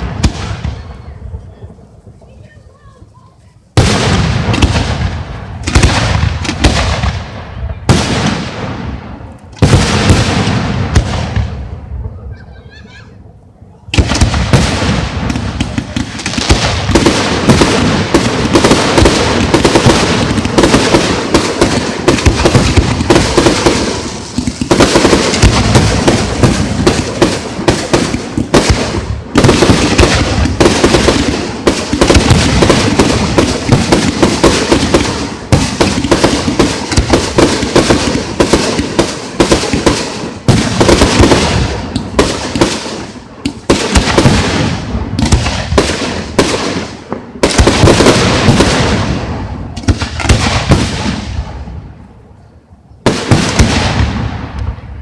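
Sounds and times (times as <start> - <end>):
fireworks bangs and crackling: 0.0 - 55.0.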